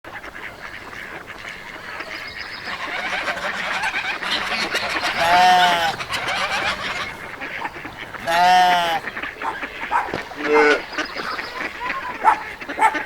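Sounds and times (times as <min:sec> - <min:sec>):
poultry calls: 0:00.1 - 0:13.0
loud drawn-out animal call: 0:02.6 - 0:13.0.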